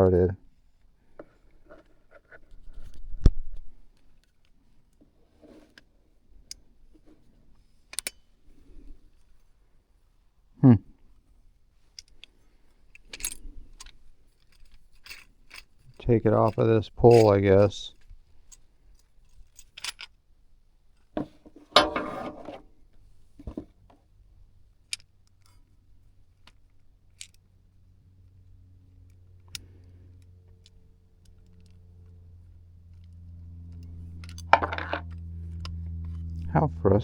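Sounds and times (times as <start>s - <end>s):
small metal parts clinking: 11.9s - 20.2s, 24.8s - 27.5s, 29.1s - 36.5s
steady low hum: 24.4s - 37.0s.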